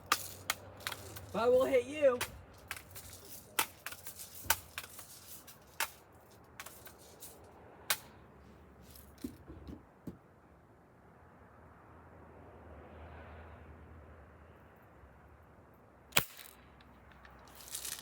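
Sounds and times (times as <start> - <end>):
bb gun clicks and shots: 0.0 - 6.0.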